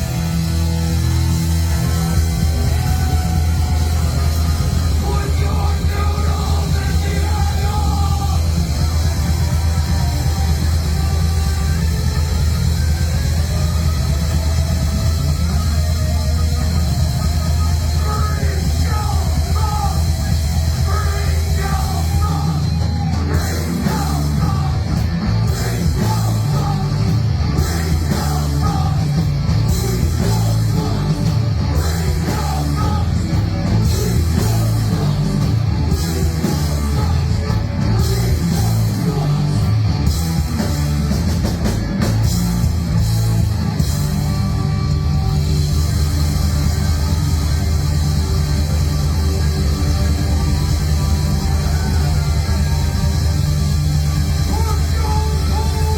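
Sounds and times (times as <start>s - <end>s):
live heavy rock band: 0.0s - 55.9s.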